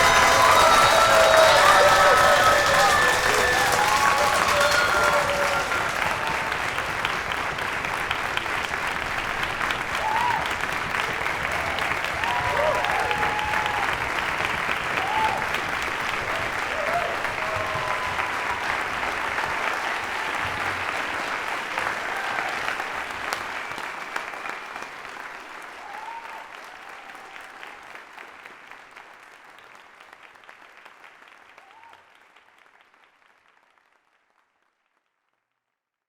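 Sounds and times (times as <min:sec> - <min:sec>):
voices calling out: 0:00.0 - 0:06.8
audience applauding: 0:00.0 - 0:34.5.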